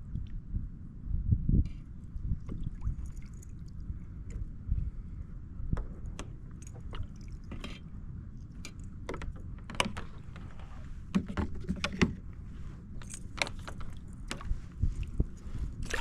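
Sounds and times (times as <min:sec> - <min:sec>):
water sloshing and splashing: 0:02.2 - 0:04.1, 0:06.5 - 0:16.0.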